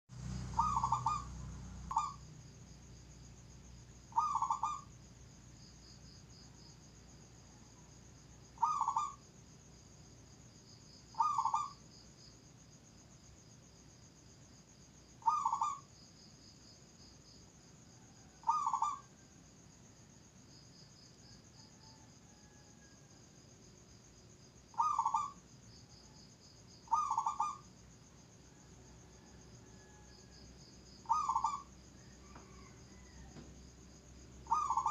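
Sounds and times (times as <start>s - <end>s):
dove cooing: 0.4s - 2.2s, 4.1s - 4.9s, 8.6s - 9.2s, 11.2s - 11.8s, 15.2s - 15.9s, 18.3s - 19.1s, 24.8s - 25.4s, 26.9s - 27.6s, 31.0s - 33.4s, 34.4s - 34.9s.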